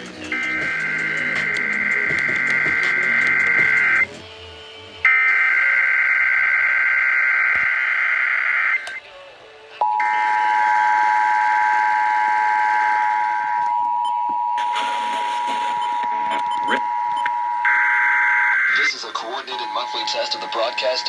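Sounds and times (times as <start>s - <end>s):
two-tone attention signal: 9.8s - 21.0s
digital data screech: 17.7s - 21.0s.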